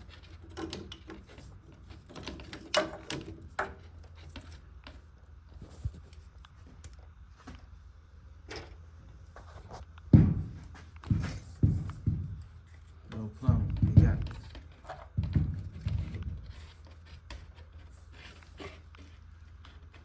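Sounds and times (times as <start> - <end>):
steady low hum: 0.0 - 20.0
hand tools knocking and clicking: 10.2 - 16.5.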